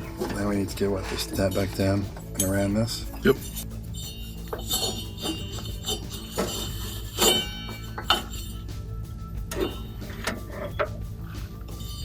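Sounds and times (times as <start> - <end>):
steady low hum: 0.0 - 12.0
metal parts clinking: 0.3 - 8.7, 11.6 - 12.0.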